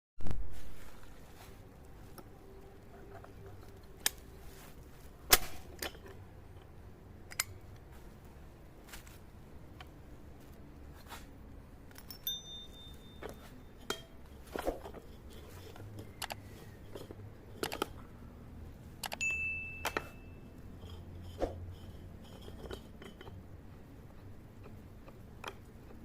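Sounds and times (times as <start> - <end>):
small metal parts clinking: 11.9 - 18.0
high metallic ringing: 12.0 - 14.2, 19.2 - 21.1.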